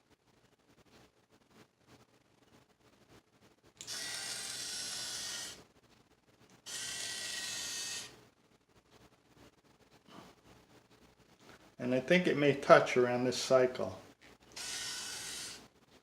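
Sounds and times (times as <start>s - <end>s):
small geared motor whirring: 3.8s - 5.6s, 6.7s - 8.1s, 14.6s - 15.6s.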